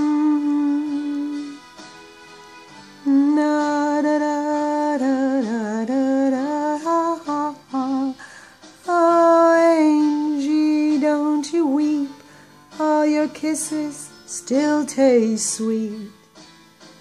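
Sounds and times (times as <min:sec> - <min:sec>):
person humming a slow melody: 0:00.0 - 0:01.6, 0:03.0 - 0:08.2.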